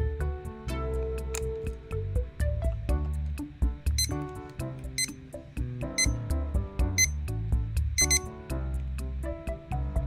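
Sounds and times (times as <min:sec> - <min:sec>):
background music: 0:00.0 - 0:10.0
alarm clock beep: 0:05.0 - 0:05.2, 0:06.0 - 0:06.2, 0:06.9 - 0:07.2, 0:08.0 - 0:08.3.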